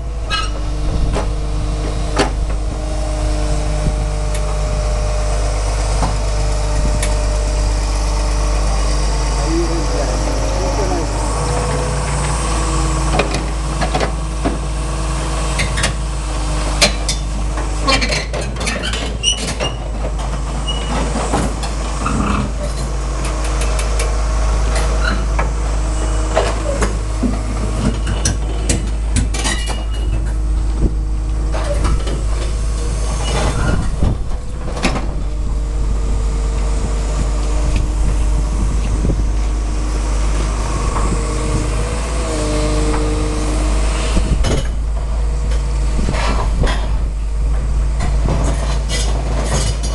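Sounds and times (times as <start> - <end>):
excavator diesel engine running: 0.0 - 49.9
steel tracks clanking and squeaking: 0.0 - 49.9.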